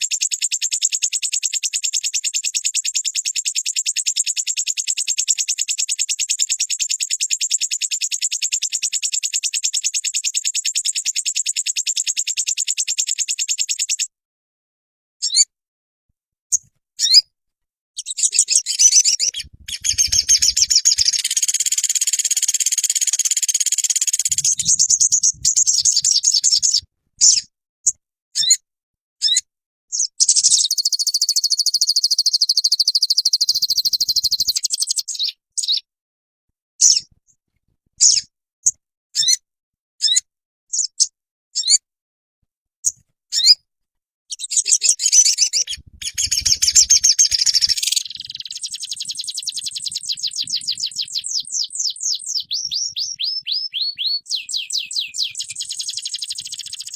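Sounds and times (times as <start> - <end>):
songbird chirping trills: 18.0 - 27.4, 30.0 - 35.8, 44.3 - 56.9.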